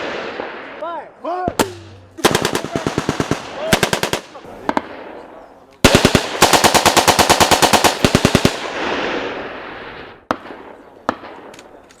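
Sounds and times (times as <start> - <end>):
automatic machine-gun fire: 2.2 - 4.4, 5.9 - 8.8.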